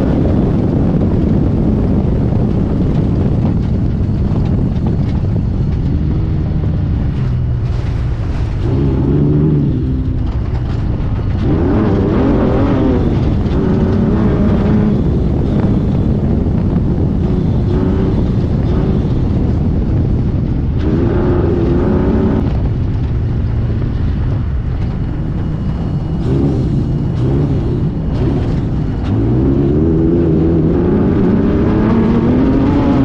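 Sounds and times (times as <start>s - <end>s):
race car engine revving: 5.4s - 22.8s, 25.5s - 33.0s.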